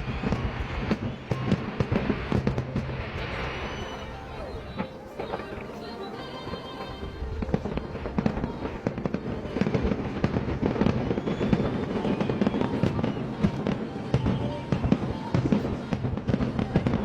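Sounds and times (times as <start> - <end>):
fireworks bangs and crackles: 0.0 - 17.0.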